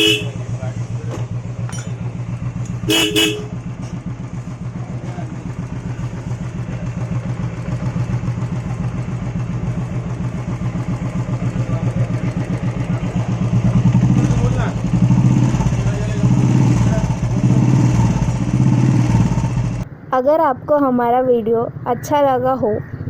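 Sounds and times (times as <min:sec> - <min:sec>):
vehicle horn toot: 0:00.0 - 0:00.6, 0:02.8 - 0:03.7
motorcycle engine idling: 0:00.0 - 0:19.8.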